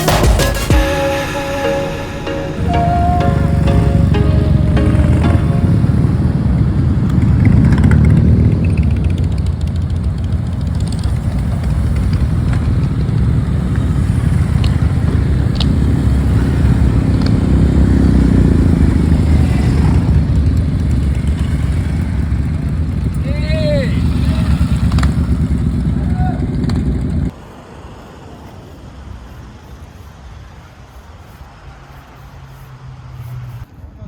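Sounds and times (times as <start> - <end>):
motorcycle engines running: 4.7 - 27.3.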